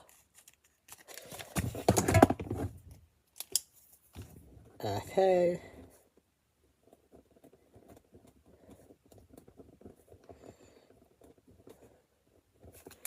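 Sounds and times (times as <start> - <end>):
plastic pieces rustling and clicking: 0.0 - 2.4.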